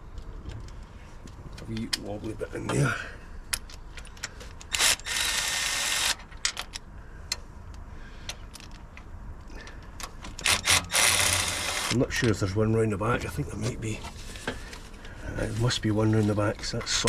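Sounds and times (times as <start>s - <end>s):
cordless power tool spinning: 4.7s - 6.2s, 10.4s - 12.0s.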